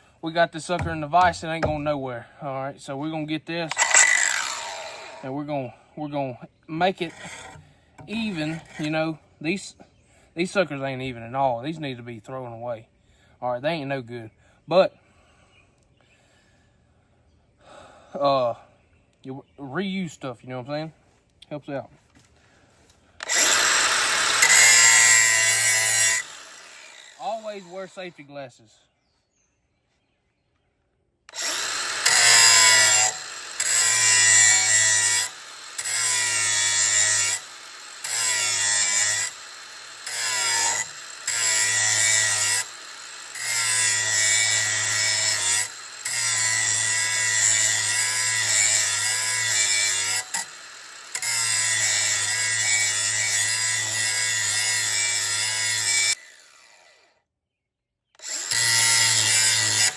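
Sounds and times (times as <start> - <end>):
grinder sharpening mower blade: 0.7 - 1.9, 3.7 - 5.3, 6.9 - 9.0, 23.2 - 28.1, 31.3 - 56.8, 58.2 - 59.9.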